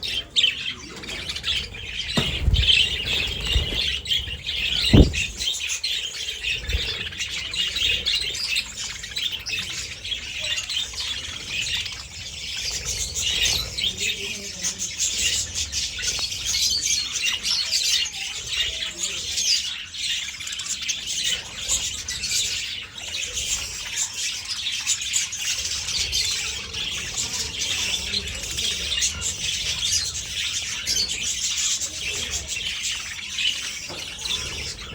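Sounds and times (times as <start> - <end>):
budgerigars chattering: 0.0 - 34.9
low thumps: 2.1 - 5.5.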